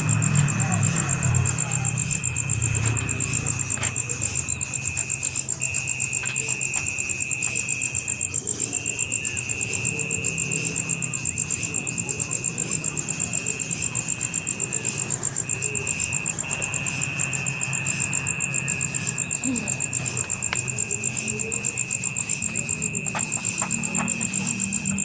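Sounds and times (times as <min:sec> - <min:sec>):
insects pulsing trill: 0:00.0 - 0:25.0
high insect buzz: 0:01.8 - 0:25.0.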